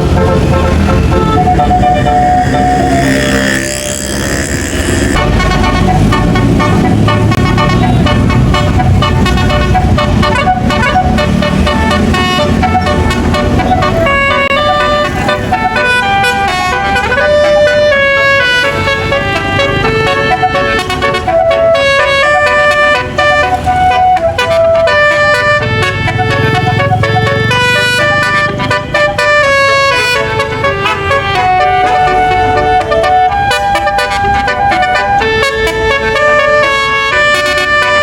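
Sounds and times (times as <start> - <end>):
bus engine rumbling: 0.0 - 38.0
multi-tone bus horn melody: 0.0 - 38.0.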